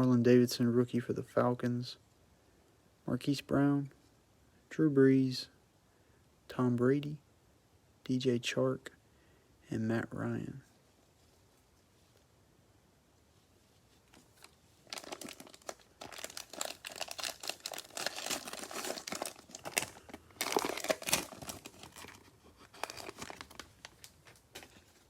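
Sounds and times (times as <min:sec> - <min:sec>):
cellophane wrapper tearing and crinkling: 0:14.2 - 0:25.0.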